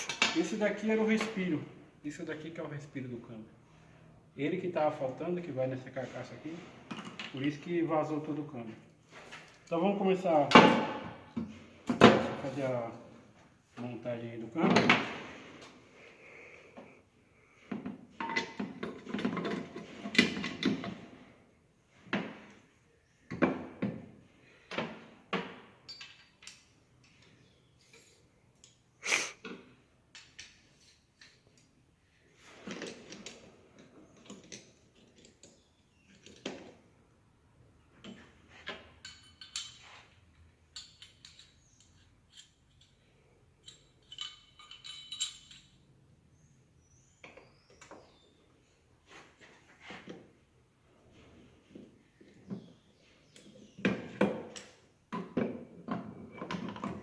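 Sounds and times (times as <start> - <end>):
metal gearbox parts clinking: 43.6 - 45.8.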